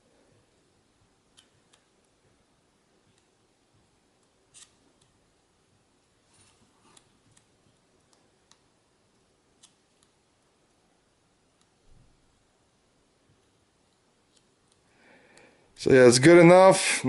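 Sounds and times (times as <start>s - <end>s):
plastic card scraping: 4.5s - 4.8s.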